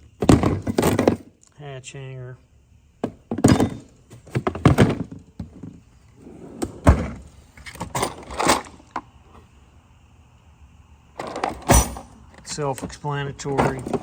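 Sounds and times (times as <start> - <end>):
knocks and clatters of drawers: 0.2 - 1.3, 3.0 - 9.0, 11.2 - 12.2, 12.8 - 14.0.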